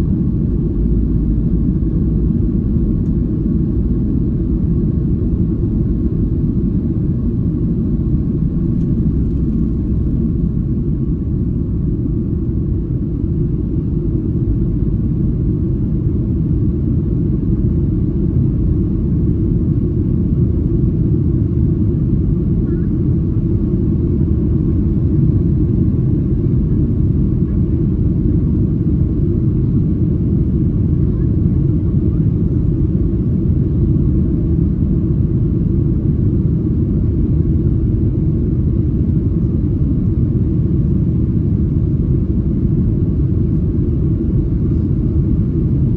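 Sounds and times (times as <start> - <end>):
jet engine rumble in cabin: 0.0 - 45.9.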